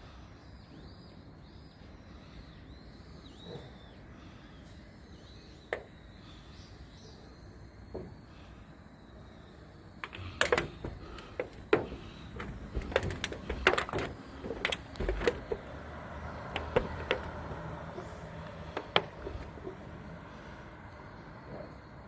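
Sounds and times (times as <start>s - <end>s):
sharp clicks and knocks: 10.0s - 15.8s, 16.4s - 19.9s.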